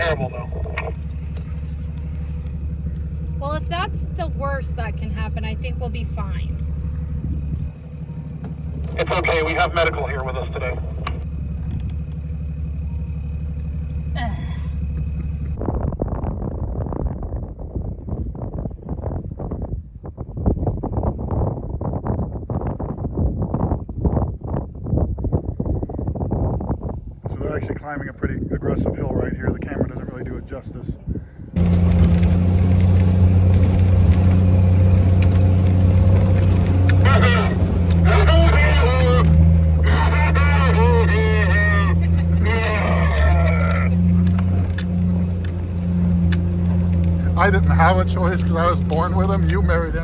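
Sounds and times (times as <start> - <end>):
voice: 0.0 - 1.1, 3.3 - 6.6, 8.8 - 11.2, 14.2 - 14.7, 27.3 - 31.0, 36.6 - 45.2, 47.1 - 50.0
engine running low drone: 0.0 - 19.2, 31.6 - 50.0
rough rumble with crackling: 0.0 - 25.1, 31.6 - 50.0.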